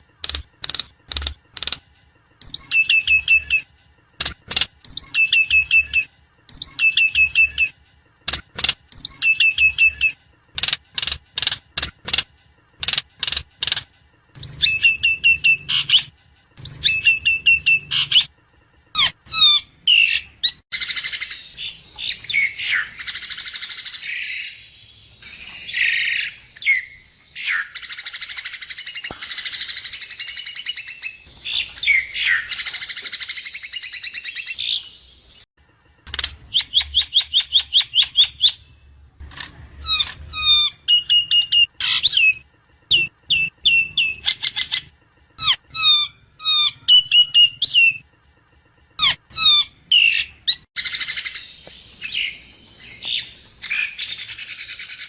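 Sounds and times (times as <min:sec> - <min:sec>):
bird sharp notes and whistles: 0:02.4 - 0:03.7, 0:04.9 - 0:07.8, 0:08.9 - 0:10.2, 0:14.4 - 0:18.3, 0:19.0 - 0:35.2, 0:39.8 - 0:48.0, 0:49.0 - 0:55.0
bird harsh raspy chattering: 0:49.0 - 0:55.0.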